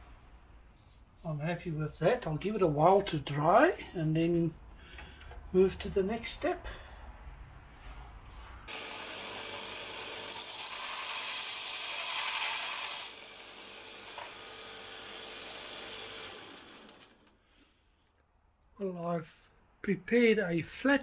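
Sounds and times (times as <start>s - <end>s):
power tool humming: 8.7s - 17.3s.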